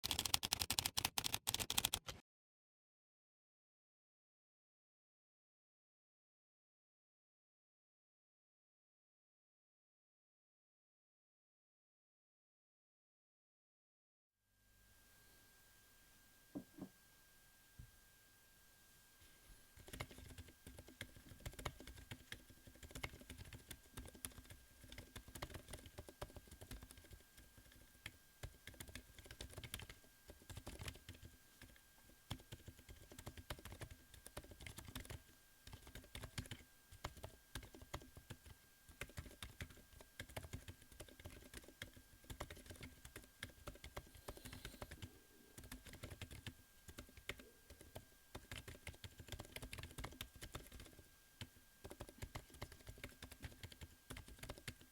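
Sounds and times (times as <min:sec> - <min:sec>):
soft keyboard typing: 0:00.0 - 0:02.2, 0:19.8 - 0:54.9.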